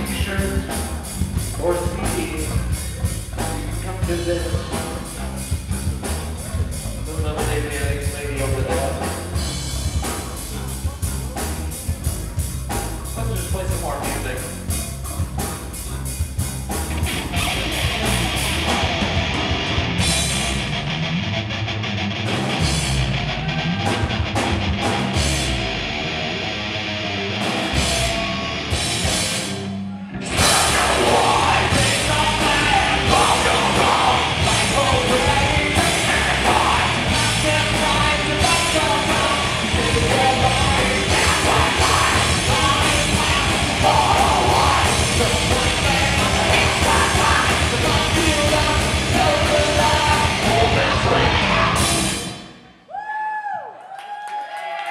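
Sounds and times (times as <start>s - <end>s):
live rock band playing: 0.0s - 52.8s
person singing: 30.2s - 52.2s.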